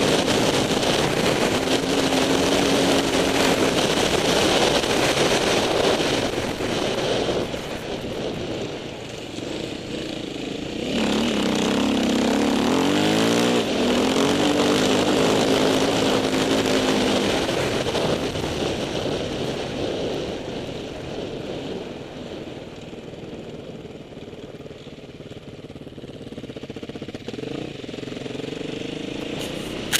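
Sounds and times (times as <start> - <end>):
wind noise: 0.0 - 23.8
motorcycle engine revving: 0.0 - 29.9.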